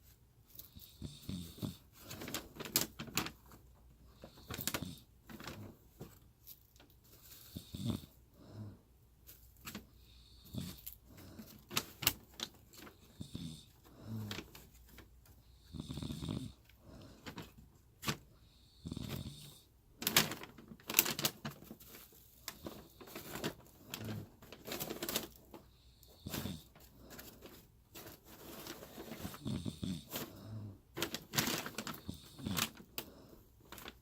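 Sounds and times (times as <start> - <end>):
woman snoring: 7.6 - 8.8, 15.6 - 17.4, 18.6 - 19.7, 29.3 - 30.9.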